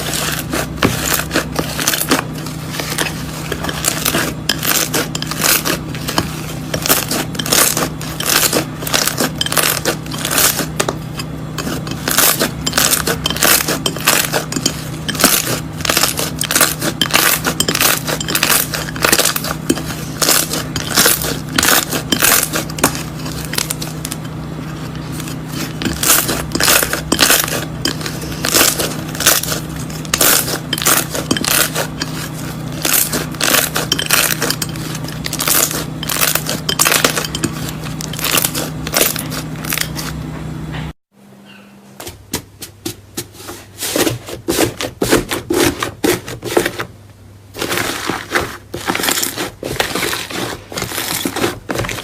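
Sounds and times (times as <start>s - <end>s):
steady hum: 0.0s - 52.0s
slime crackling and popping: 25.8s - 32.2s.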